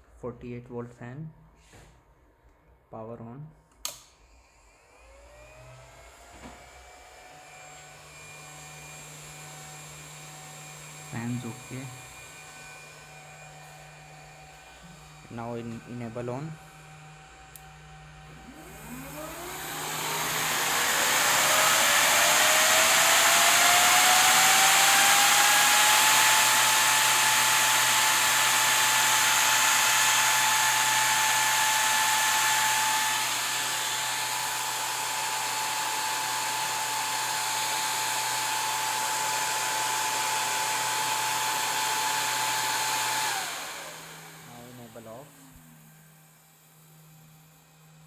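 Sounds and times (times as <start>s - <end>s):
electric fan whining: 5.1s - 46.0s.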